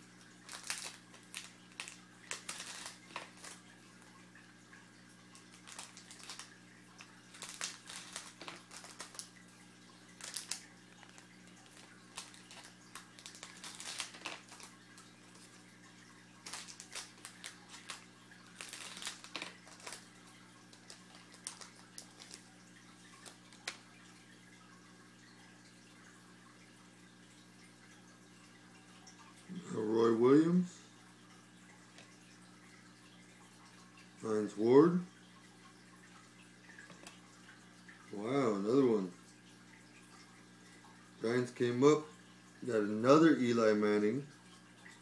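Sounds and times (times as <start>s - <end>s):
low steady hum: 0.0s - 45.0s
foil pack crinkling and tearing: 0.4s - 3.6s, 5.4s - 9.4s, 10.1s - 15.6s, 16.4s - 20.1s, 20.7s - 22.5s, 23.2s - 23.8s.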